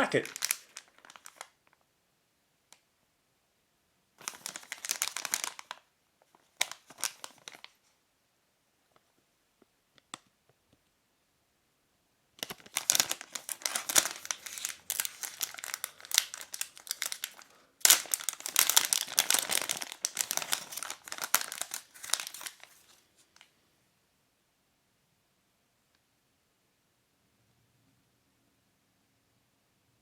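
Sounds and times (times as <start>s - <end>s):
packaging tearing: 0.0s - 1.6s, 4.2s - 5.8s, 6.4s - 7.8s, 12.4s - 23.0s
plastic packaging crackling: 0.0s - 1.8s, 4.2s - 7.8s, 12.4s - 23.5s.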